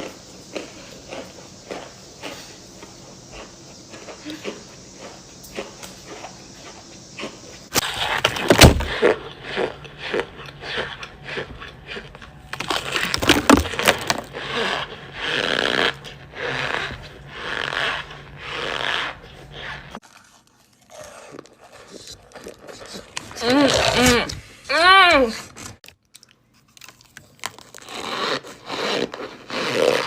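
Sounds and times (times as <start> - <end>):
crunchy chewing: 0.0 - 24.4, 25.8 - 30.0
blocks cracking when bitten: 12.5 - 14.3.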